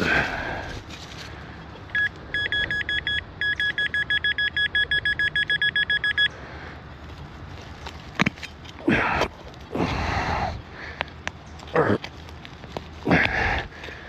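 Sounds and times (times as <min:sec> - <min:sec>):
metal detector two-tone beeping: 0:01.9 - 0:06.3.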